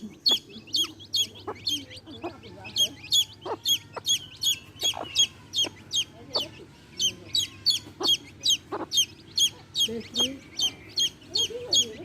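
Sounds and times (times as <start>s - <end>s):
baby chicks peeping: 0.0s - 12.0s
hen clucking: 0.0s - 12.0s.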